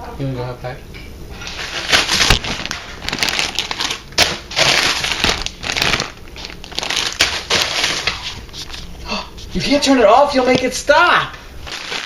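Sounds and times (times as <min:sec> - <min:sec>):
crunching and crinkling: 0:01.4 - 0:09.0, 0:11.6 - 0:12.0.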